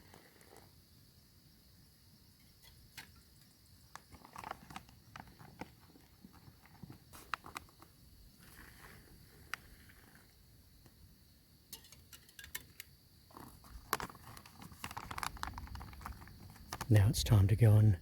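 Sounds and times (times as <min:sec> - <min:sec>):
light clicks and taps of cooking gear: 0:02.4 - 0:07.9, 0:11.7 - 0:16.9.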